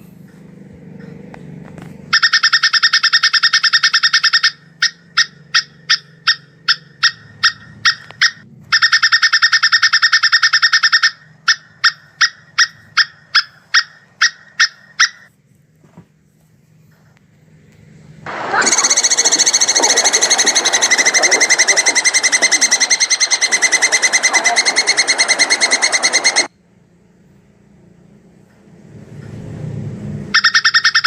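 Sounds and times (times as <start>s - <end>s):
squirrel chattering rattle: 18.7s - 26.5s.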